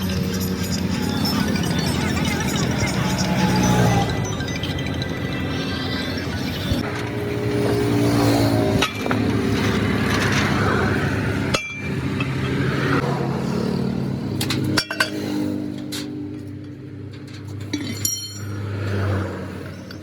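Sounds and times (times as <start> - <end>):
sharp metallic clinks: 0.0 - 5.5, 14.5 - 20.0.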